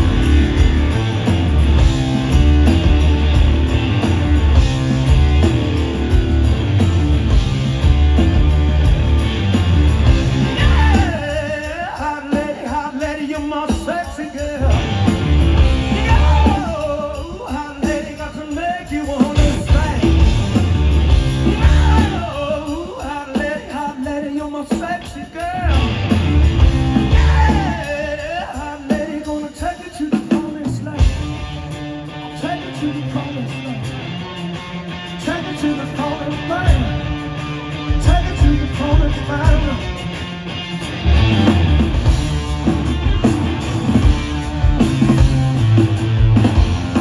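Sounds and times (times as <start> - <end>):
live rock band playing: 0.0 - 47.0
man singing: 10.3 - 20.6, 21.4 - 31.6, 32.2 - 34.2, 35.0 - 40.2.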